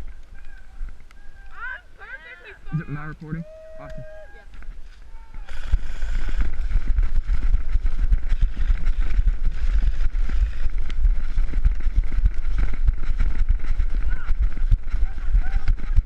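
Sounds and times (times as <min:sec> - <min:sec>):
wind on camera microphone: 0:02.7 - 0:16.0.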